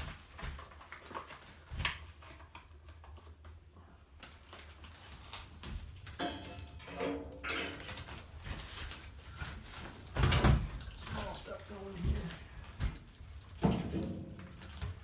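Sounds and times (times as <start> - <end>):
gear knocking and rustling: 7.3 - 15.0.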